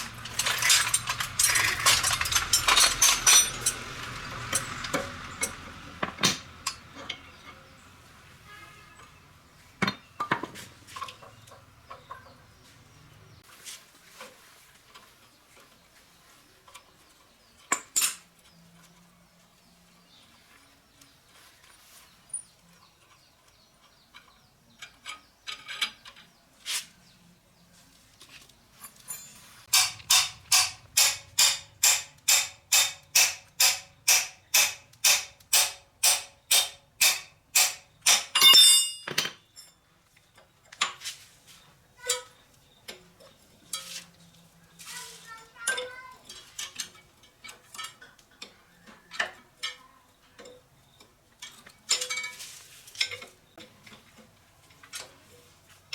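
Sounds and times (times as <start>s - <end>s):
tools clicking and knocking: 0.0s - 7.6s, 9.8s - 12.4s, 16.7s - 18.6s, 28.8s - 39.8s, 45.6s - 52.4s.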